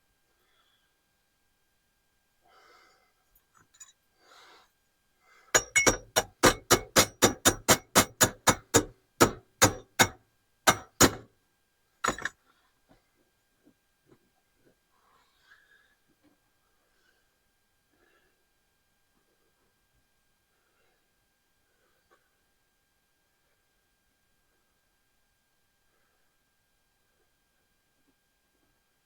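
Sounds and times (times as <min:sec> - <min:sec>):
hammer striking metal: 0:05.6 - 0:11.2, 0:12.0 - 0:12.3.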